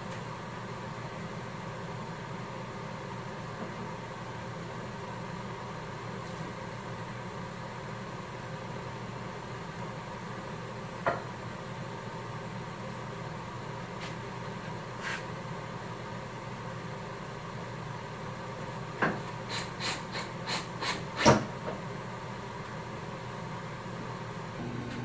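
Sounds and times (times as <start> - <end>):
steady low hum: 23.8 - 25.0.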